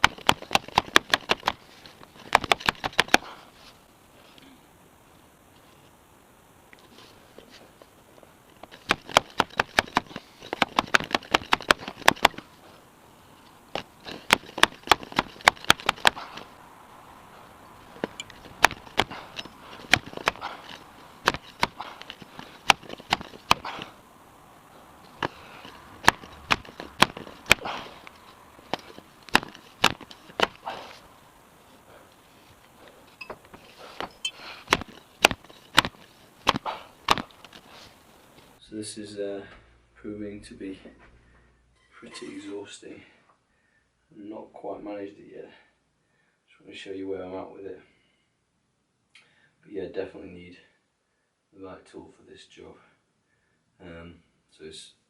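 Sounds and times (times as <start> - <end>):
bicycle fork knocking on concrete: 25.2 - 28.0, 28.7 - 30.8.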